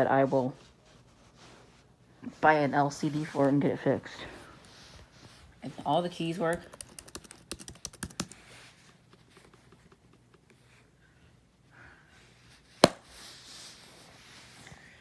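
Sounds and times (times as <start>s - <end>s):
laptop keys clicking: 6.4s - 8.4s.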